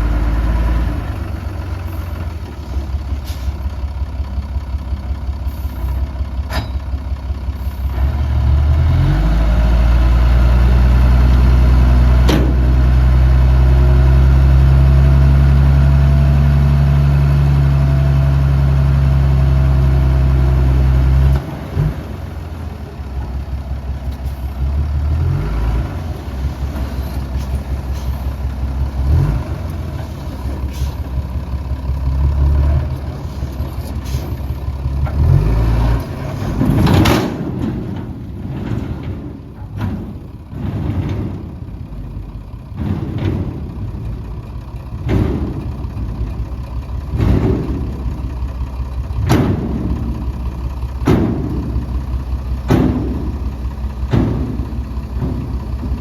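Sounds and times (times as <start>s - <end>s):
diesel machinery engine droning: 0.0s - 56.0s
loud knocks and clatter: 12.1s - 13.2s, 25.6s - 56.0s.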